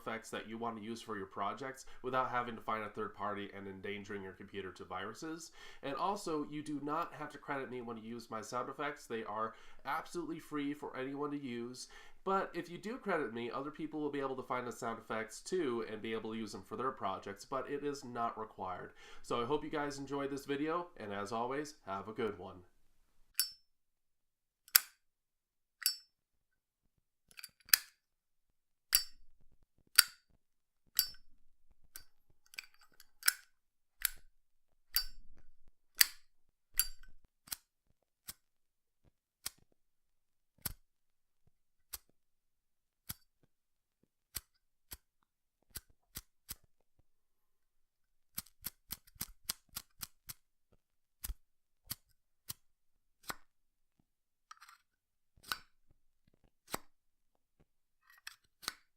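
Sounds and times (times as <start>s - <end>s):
lighter lid clicking: 28.9s - 29.2s, 34.9s - 35.2s.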